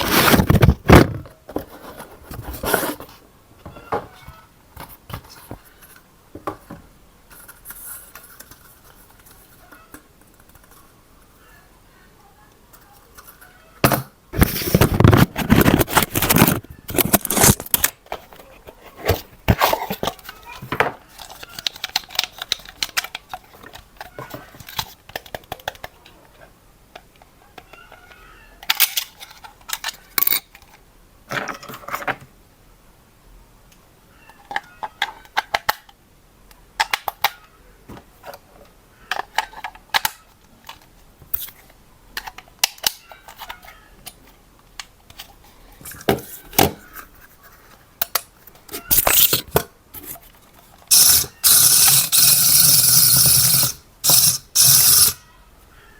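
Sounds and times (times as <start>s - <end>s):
plastic toy parts clicking: 21.1s - 26.0s, 26.9s - 30.8s, 34.4s - 36.0s, 36.8s - 37.5s, 39.1s - 44.2s, 48.0s - 55.2s.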